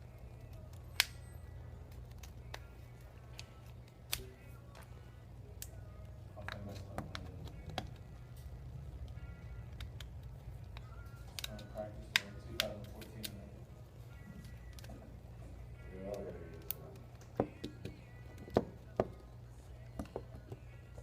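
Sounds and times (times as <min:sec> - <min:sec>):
steady low hum: 0:00.0 - 0:21.0
tool clicks and taps on casing: 0:17.2 - 0:19.2, 0:19.9 - 0:20.6.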